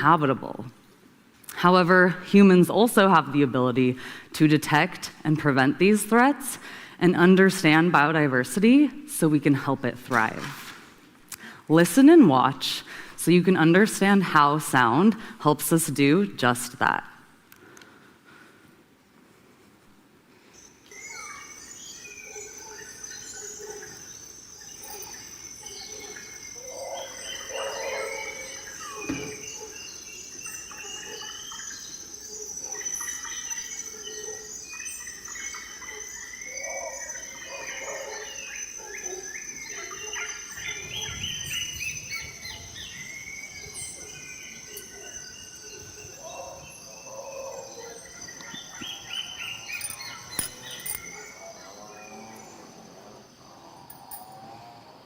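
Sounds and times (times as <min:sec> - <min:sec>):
birds whistling and chirping: 0:20.6 - 0:52.6
high-pitched insect drone: 0:20.6 - 0:55.0.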